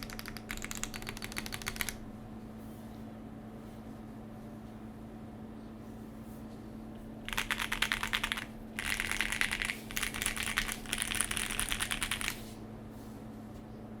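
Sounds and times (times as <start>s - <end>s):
mechanical keyboard typing: 0.0s - 2.0s, 7.3s - 12.4s.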